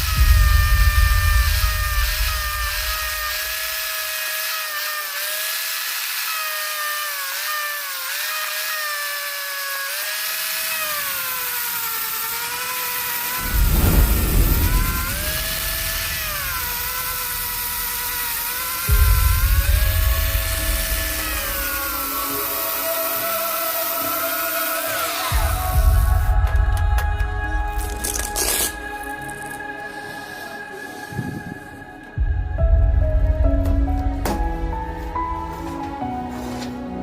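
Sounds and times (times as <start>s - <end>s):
low rumbling noise: 0.0s - 3.9s, 13.2s - 22.3s, 25.3s - 30.1s, 30.9s - 35.8s
power tool whining: 0.0s - 36.9s.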